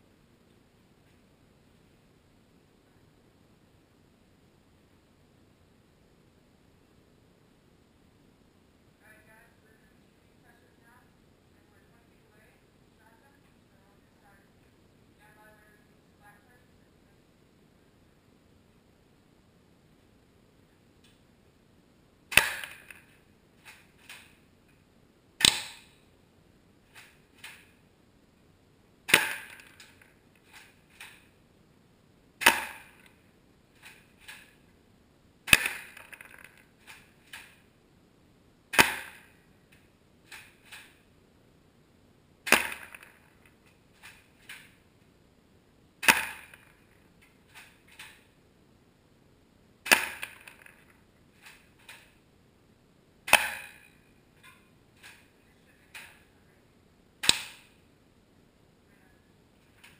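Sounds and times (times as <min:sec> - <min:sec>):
airsoft shotgun shots: 0:22.3 - 0:23.1, 0:25.4 - 0:26.0, 0:29.1 - 0:29.8, 0:32.4 - 0:33.0, 0:35.5 - 0:36.2, 0:38.7 - 0:39.3, 0:42.5 - 0:43.2, 0:46.0 - 0:46.8, 0:49.8 - 0:50.8, 0:53.3 - 0:53.9.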